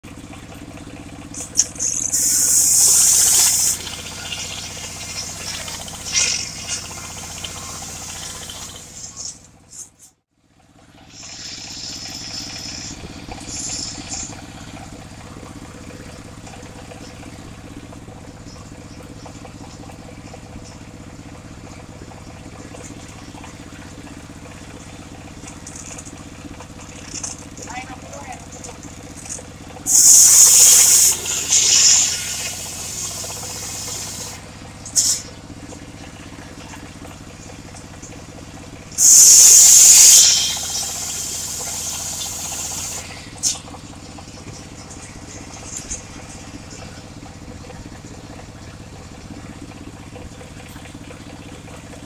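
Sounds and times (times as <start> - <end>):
chainsaw engine idling: 0.1 - 52.0
hiss bursts: 1.8 - 9.3, 11.1 - 14.3, 29.9 - 34.4, 35.0 - 35.3, 39.0 - 43.6.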